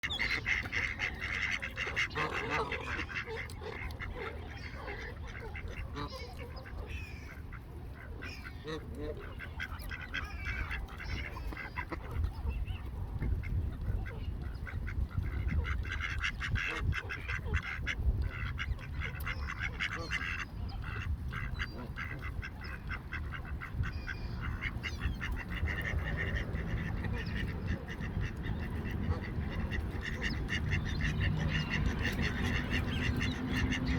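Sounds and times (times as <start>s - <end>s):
geese honking: 0.0s - 7.6s, 15.2s - 33.9s
ducks quacking: 0.0s - 33.9s.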